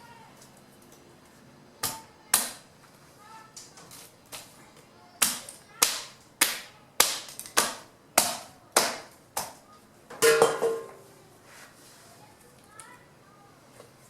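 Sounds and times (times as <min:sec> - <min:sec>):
chopping strikes on wood: 0:05.2 - 0:09.6.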